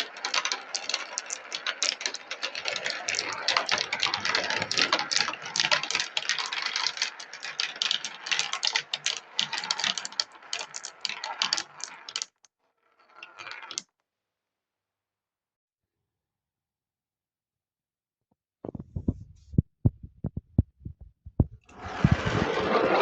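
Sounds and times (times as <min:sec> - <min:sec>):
marbles rolling and clacking: 0:00.0 - 0:13.9, 0:21.7 - 0:23.0.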